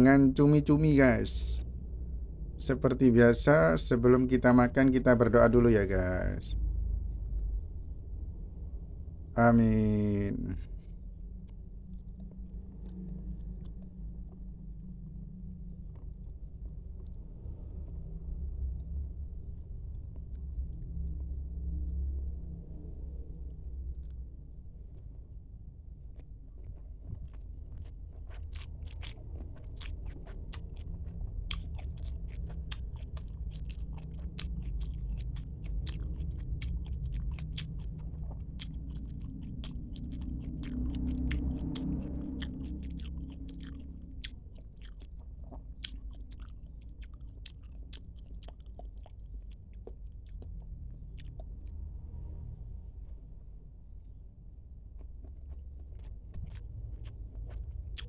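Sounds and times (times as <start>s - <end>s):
wet mouth chewing clicks: 10.6s - 24.2s, 26.2s - 51.9s, 54.9s - 58.0s
crunching bites: 26.1s - 51.7s.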